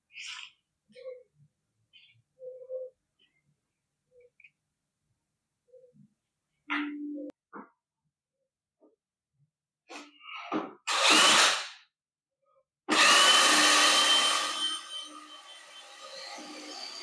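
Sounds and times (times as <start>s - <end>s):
cordless drill running: 10.9s - 11.7s, 12.9s - 17.0s.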